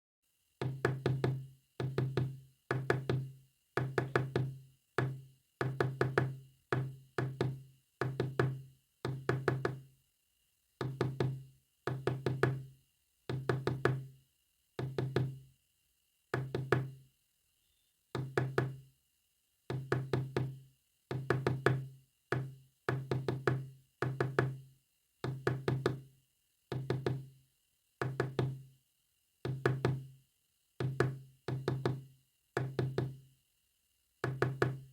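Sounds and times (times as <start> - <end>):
faint high whine: 17.2 - 18.1.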